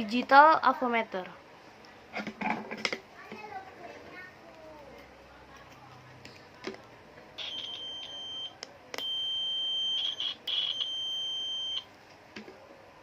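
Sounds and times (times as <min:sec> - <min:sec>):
multimeter continuity beep: 0:07.4 - 0:11.9.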